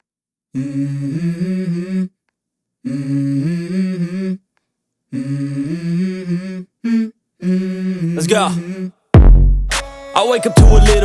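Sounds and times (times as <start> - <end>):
person humming a melody: 5.2 - 9.0, 9.9 - 11.0.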